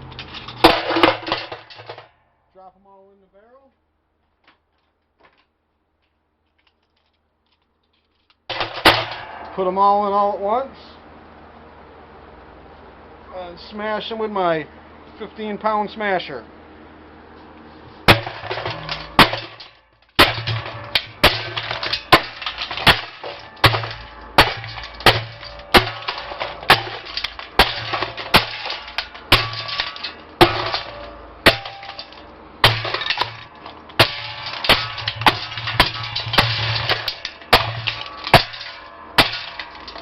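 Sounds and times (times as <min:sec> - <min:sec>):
broken pieces clattering: 0:00.0 - 0:02.2, 0:18.1 - 0:40.0
weight pounding in steel drum: 0:32.6 - 0:40.0.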